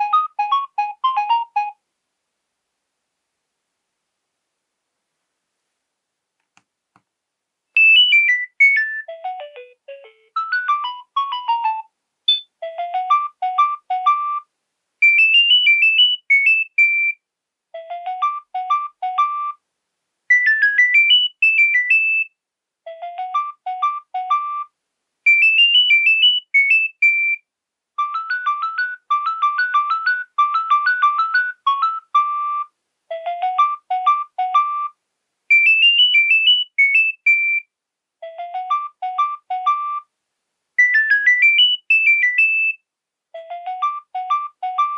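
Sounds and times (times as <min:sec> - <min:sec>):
polyphonic phone ringtone: 0:00.0 - 0:01.8, 0:07.8 - 0:14.4, 0:17.8 - 0:19.6, 0:22.9 - 0:24.7, 0:28.0 - 0:34.9, 0:38.2 - 0:40.0, 0:43.4 - 0:44.9.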